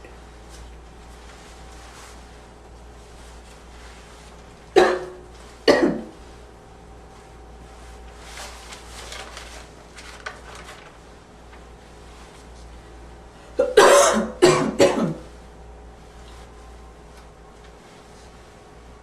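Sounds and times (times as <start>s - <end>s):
person coughing: 4.8s - 6.1s, 13.6s - 15.2s.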